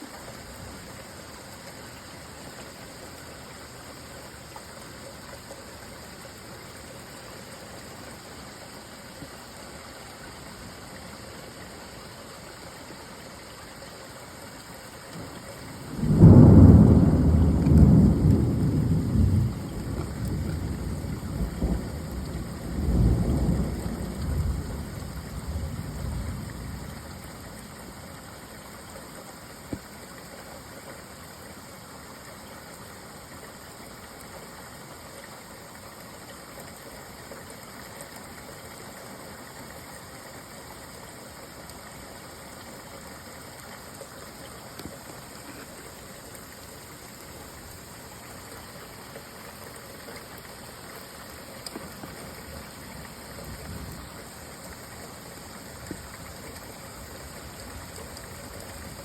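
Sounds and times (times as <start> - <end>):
steady rain: 0.0 - 59.0
rolling thunder: 15.9 - 27.2.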